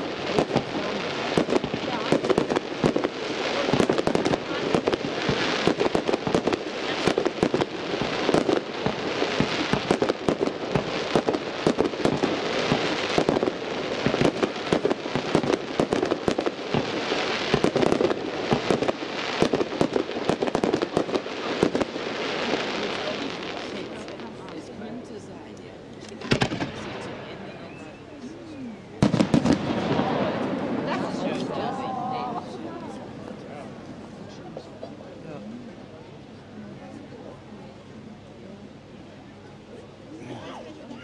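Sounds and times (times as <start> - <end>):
fireworks crackling and popping: 0.0 - 24.8, 25.9 - 27.4, 29.0 - 34.8.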